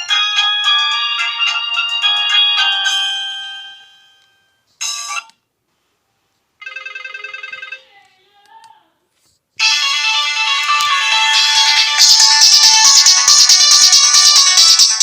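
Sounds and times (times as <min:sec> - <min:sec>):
melodic phone ringtone: 0:00.0 - 0:05.3, 0:06.6 - 0:07.9, 0:09.6 - 0:15.0.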